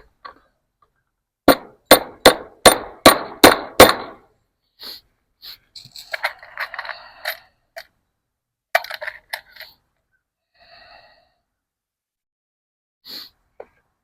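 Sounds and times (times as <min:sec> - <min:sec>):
metallic clinking and rattling: 0:05.8 - 0:07.9.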